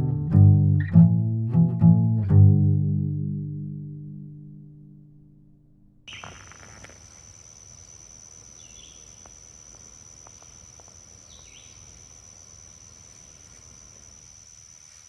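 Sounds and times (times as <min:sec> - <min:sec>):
bird chirps: 0:06.1 - 0:07.1, 0:08.5 - 0:09.2, 0:11.2 - 0:12.0
insects droning: 0:06.1 - 0:15.0.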